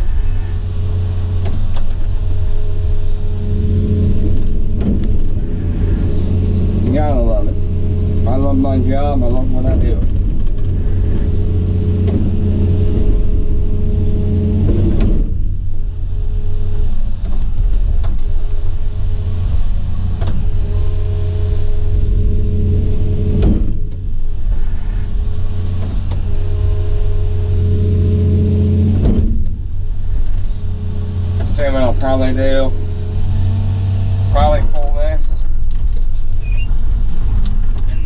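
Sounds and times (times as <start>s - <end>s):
excavator engine hum: 0.0s - 38.0s
hydraulic whine: 0.0s - 38.0s
sharp knocks: 23.1s - 24.1s.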